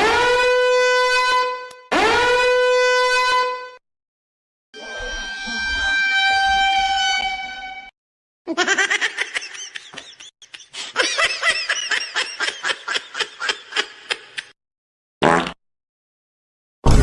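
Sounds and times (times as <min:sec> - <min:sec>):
cartoonish snickering laugh: 0:08.5 - 0:14.5.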